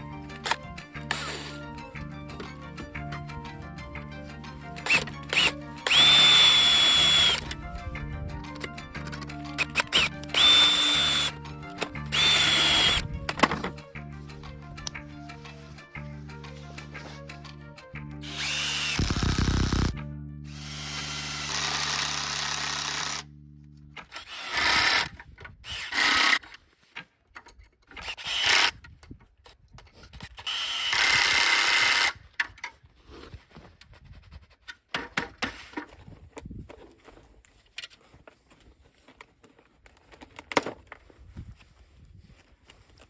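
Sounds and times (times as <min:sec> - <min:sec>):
power drill running: 0:00.0 - 0:01.8, 0:04.8 - 0:07.6, 0:09.1 - 0:13.0, 0:18.2 - 0:23.2, 0:24.1 - 0:26.4, 0:28.0 - 0:28.7, 0:30.4 - 0:32.2
clicks and knocks of tools: 0:00.3 - 0:02.6, 0:08.4 - 0:17.6, 0:24.9 - 0:31.1, 0:31.9 - 0:32.9, 0:34.7 - 0:41.1.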